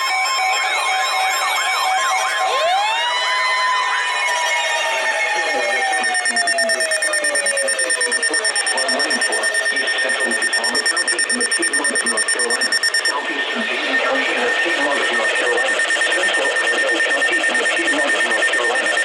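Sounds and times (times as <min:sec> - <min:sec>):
siren winding down: 0:00.0 - 0:19.0
rapid pulsing beep: 0:05.3 - 0:19.0
steady high tone: 0:05.4 - 0:19.0.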